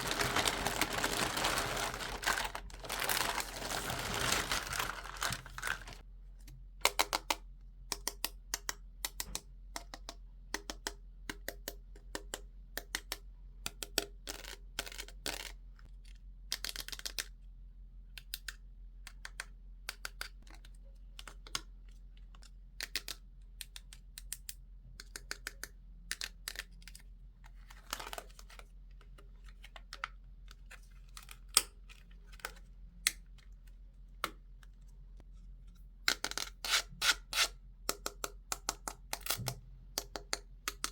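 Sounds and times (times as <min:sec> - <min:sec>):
packaging rustling: 0:00.0 - 0:06.0.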